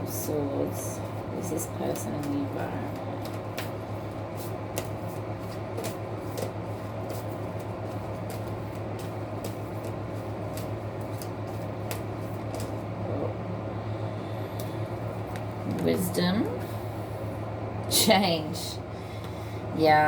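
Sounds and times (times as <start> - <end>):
low electrical hum: 0.0 - 20.0
cards being shuffled: 1.9 - 12.8.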